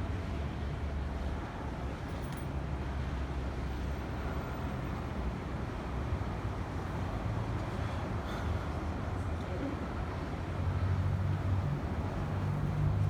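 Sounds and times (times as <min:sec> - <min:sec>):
city traffic rumble: 0:03.8 - 0:13.0.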